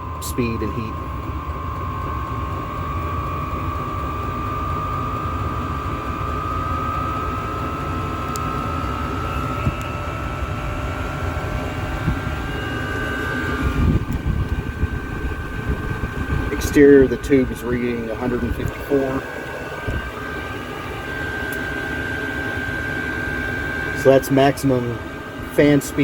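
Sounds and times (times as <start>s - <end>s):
air heater fan whine rising: 0.0s - 26.0s
low heater rumble: 0.0s - 26.0s.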